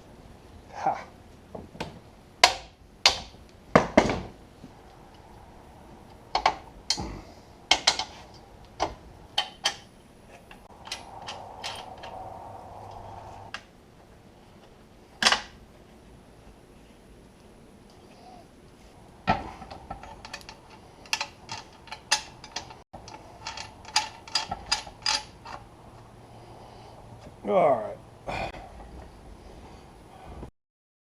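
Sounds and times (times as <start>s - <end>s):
metal scraping: 4.5s - 13.5s
metal tools clicking and clinking: 19.6s - 25.6s.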